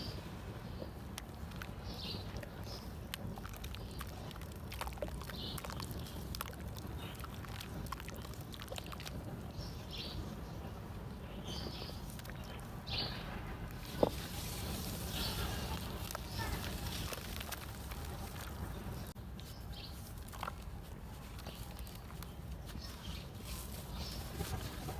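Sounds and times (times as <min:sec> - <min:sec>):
dirt crumbling in water: 0:00.9 - 0:09.5, 0:12.0 - 0:19.2.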